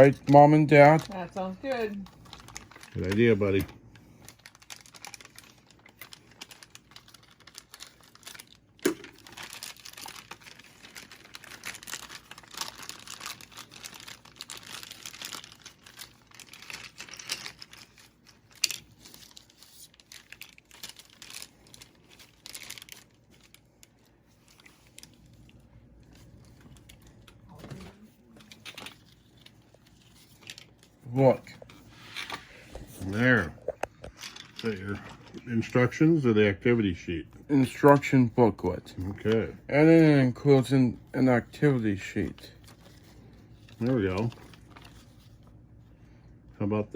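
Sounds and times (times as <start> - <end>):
packaging crinkling and tearing: 0.0 - 36.1, 37.4 - 45.9.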